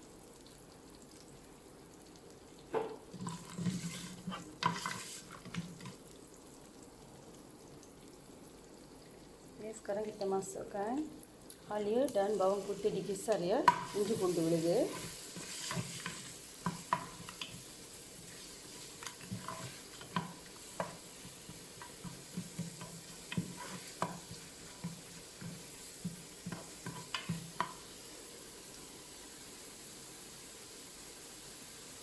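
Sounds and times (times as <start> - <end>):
onions sizzling in oil: 0.0 - 32.0
spoon stirring and scraping pot: 2.9 - 6.0, 12.3 - 27.8.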